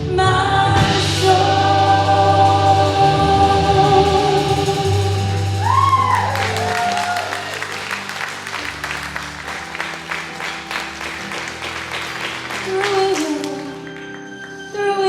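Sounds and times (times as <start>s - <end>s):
person singing: 0.0s - 7.7s, 12.5s - 15.0s
worship band holding chords: 0.0s - 15.0s
congregation clapping: 5.7s - 14.7s.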